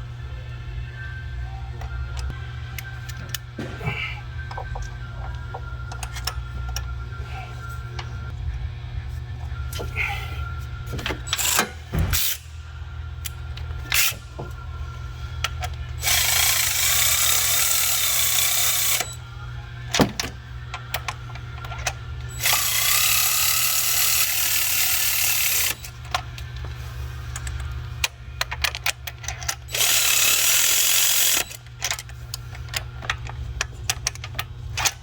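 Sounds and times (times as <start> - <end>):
power tool motor whine: 16.0 - 19.2
tools clicking and clanking: 19.8 - 35.0.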